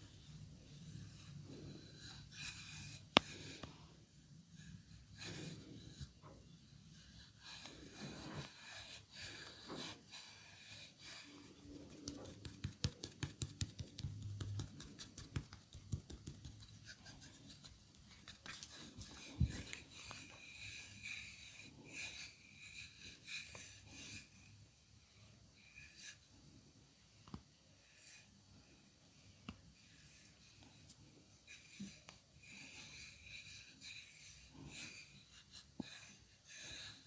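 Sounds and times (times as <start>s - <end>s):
hands rubbing on skin: 11.8s - 20.3s.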